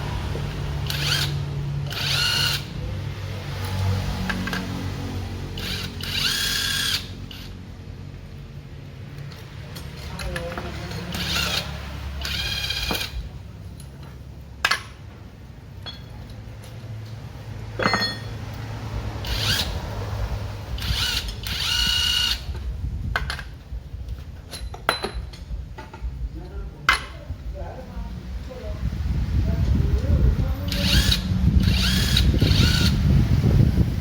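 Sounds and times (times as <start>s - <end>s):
power tool whining: 0.0s - 2.8s, 5.5s - 7.6s, 10.2s - 13.4s, 19.2s - 20.0s, 20.7s - 22.6s, 30.7s - 33.2s
metal knocks and clinks: 15.8s - 16.9s, 17.8s - 18.4s, 24.4s - 26.1s.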